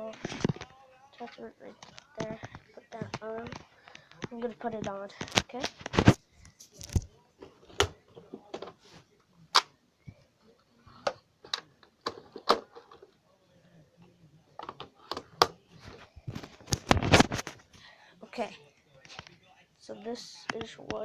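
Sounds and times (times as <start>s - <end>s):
plastic clicks and knocks: 11.0s - 13.1s.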